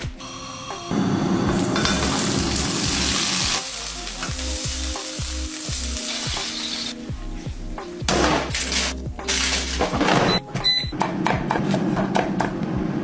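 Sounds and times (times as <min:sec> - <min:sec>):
chicken sizzling in hot oil: 0:00.4 - 0:07.0
background music with sliding bass: 0:01.5 - 0:10.7.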